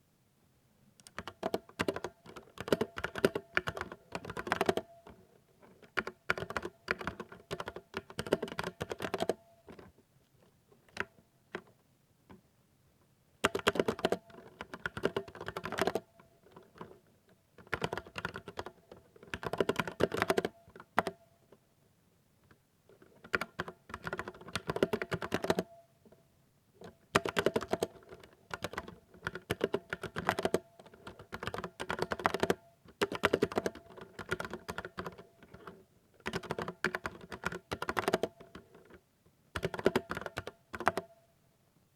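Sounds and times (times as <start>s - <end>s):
mechanical keyboard typing: 1.0s - 5.2s, 5.8s - 9.8s, 13.4s - 17.0s, 17.6s - 21.2s, 23.2s - 25.8s, 26.8s - 39.0s, 39.6s - 41.1s.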